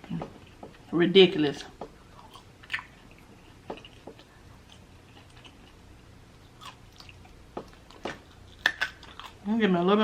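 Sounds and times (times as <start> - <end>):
wet chewing: 2.0 - 9.6.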